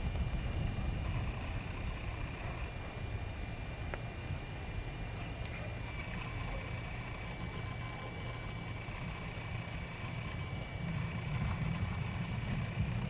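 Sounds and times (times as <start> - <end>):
wind buffeting microphone: 0.0 - 3.8, 8.8 - 13.0.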